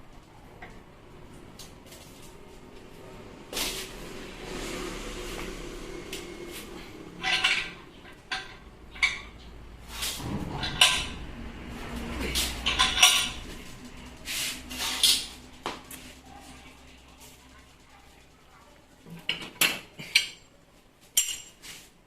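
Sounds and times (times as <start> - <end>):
metal parts clinking and scraping: 7.2 - 9.4, 12.2 - 13.5.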